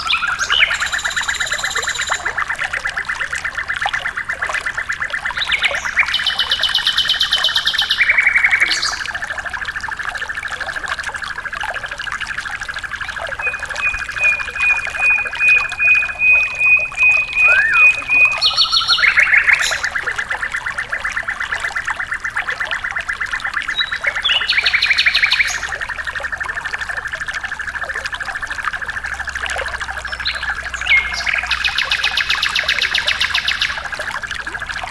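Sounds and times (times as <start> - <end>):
whistled bird note: 0.0 - 2.3, 13.3 - 20.0
songbird rattling trills: 0.0 - 2.4, 13.0 - 20.0
faintly trickling water: 0.0 - 34.9.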